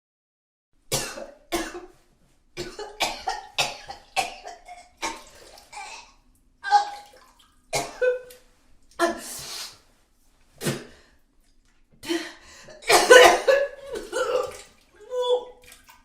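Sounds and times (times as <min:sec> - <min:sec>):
person retching and vomiting: 0:00.9 - 0:01.9, 0:02.6 - 0:08.3, 0:12.8 - 0:14.8.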